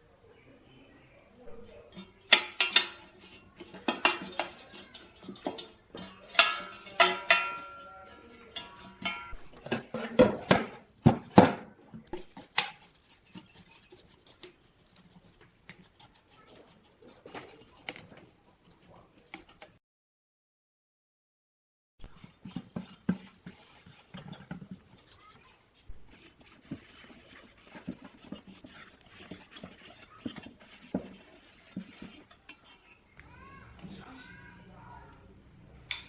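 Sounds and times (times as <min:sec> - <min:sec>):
metal objects clanking: 0:01.7 - 0:11.6.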